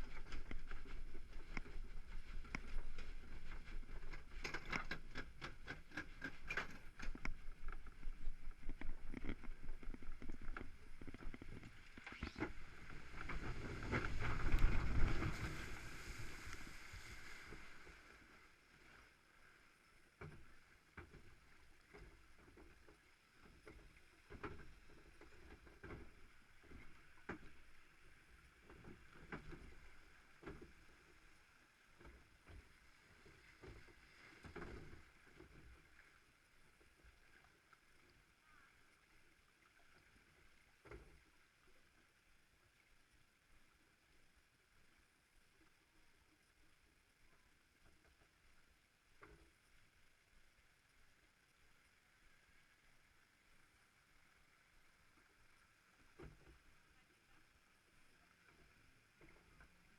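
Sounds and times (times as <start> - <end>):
rushing water: 0.0 - 41.8.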